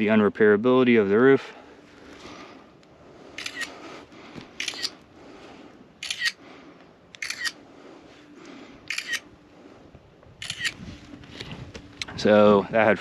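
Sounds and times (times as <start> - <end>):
camera shutter double click: 6.0 - 6.4, 7.2 - 7.6, 8.9 - 9.2, 10.4 - 10.8.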